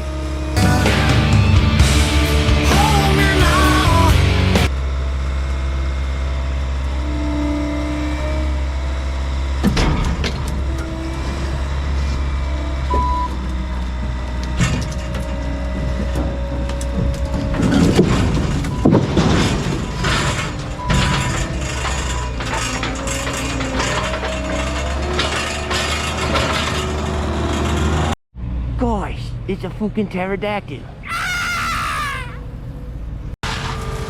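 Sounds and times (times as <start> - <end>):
skid steer engine running: 0.0 - 28.1, 31.8 - 34.0
scraping and banging: 7.0 - 28.1
metal clanks and knocks: 9.4 - 28.0.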